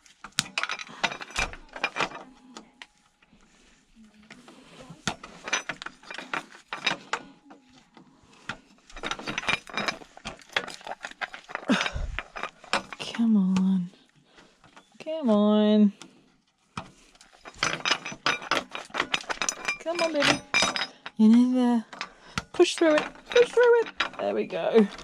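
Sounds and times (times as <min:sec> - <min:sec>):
tools clicking and ratcheting on metal: 0:00.0 - 0:02.3, 0:05.0 - 0:07.6, 0:08.4 - 0:13.7, 0:16.8 - 0:25.0.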